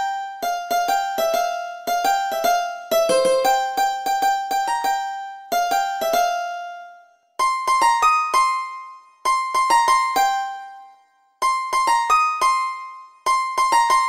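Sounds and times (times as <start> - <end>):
sitar melody: 3.0 - 4.0.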